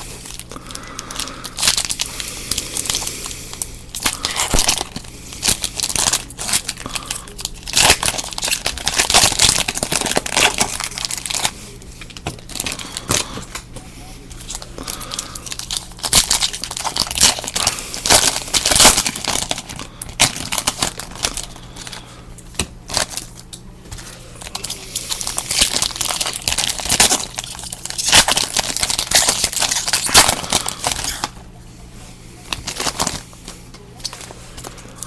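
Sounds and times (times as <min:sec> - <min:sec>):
foil wrappers crinkling and tearing: 0:00.0 - 0:13.7, 0:14.3 - 0:31.4, 0:32.4 - 0:35.0.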